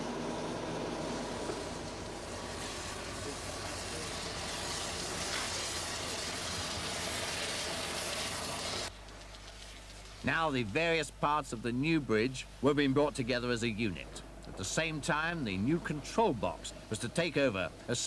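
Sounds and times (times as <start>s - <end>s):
railway vehicles running: 0.0s - 9.3s.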